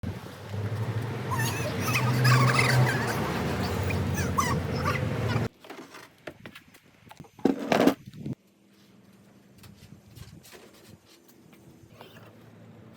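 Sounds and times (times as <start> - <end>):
animal wavering cries: 1.3 - 5.5.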